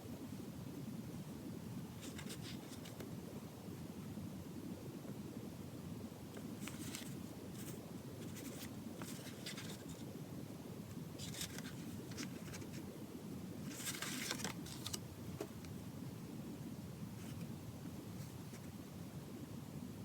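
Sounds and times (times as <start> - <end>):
low room hum: 0.0 - 20.0
small items rustling and scraping: 2.0 - 3.0, 6.4 - 10.0, 11.2 - 12.8, 13.6 - 15.5.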